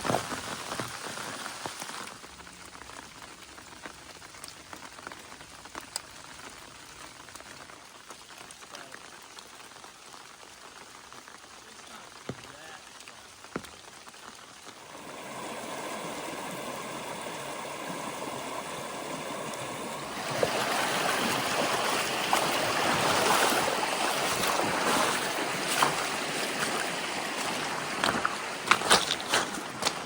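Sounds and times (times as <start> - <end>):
creek water rushing: 14.6 - 30.0.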